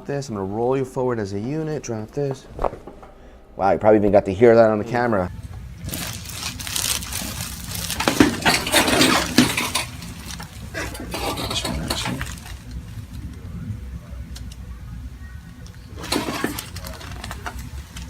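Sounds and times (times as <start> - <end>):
steady low hum: 0.0 - 18.0
rustling handling noises: 5.2 - 18.0.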